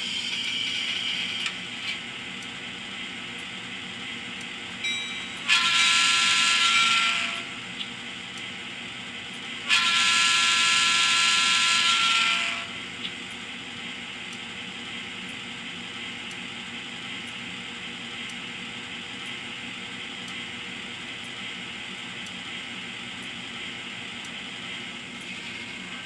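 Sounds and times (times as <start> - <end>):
locomotive horn blast: 5.4 - 7.6, 9.6 - 12.8.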